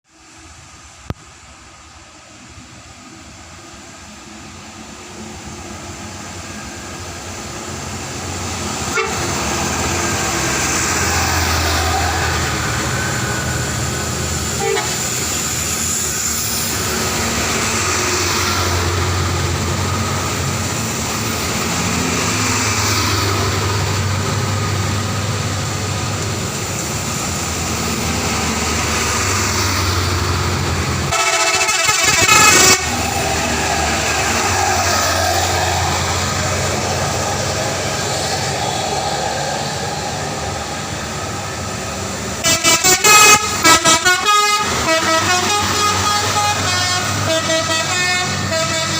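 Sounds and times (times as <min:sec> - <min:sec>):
bus engine running: 0:00.1 - 0:48.9
musical bus horn tones: 0:08.8 - 0:09.5, 0:14.6 - 0:15.2, 0:31.1 - 0:33.1, 0:42.4 - 0:48.9.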